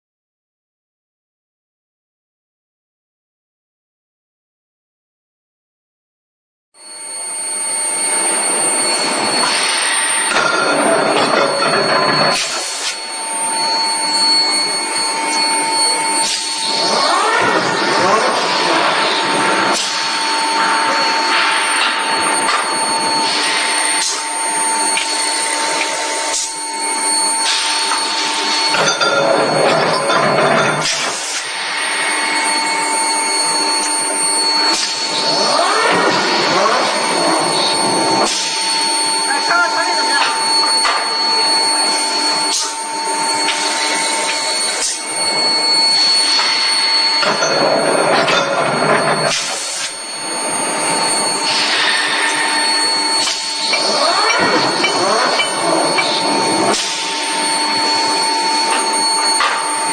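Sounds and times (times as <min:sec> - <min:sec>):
thin steady tones: 0:07.0 - 0:31.3, 0:37.7 - 0:59.8
loud steady machinery hiss: 0:07.0 - 0:59.9.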